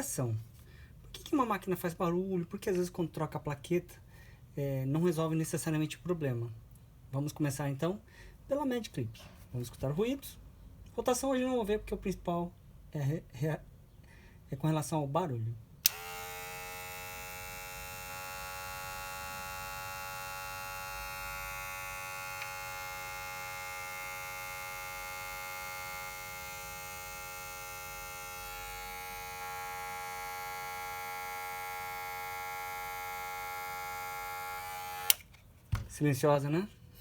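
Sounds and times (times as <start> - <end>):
hair clipper buzzing: 15.8 - 35.3
small click: 35.0 - 35.4.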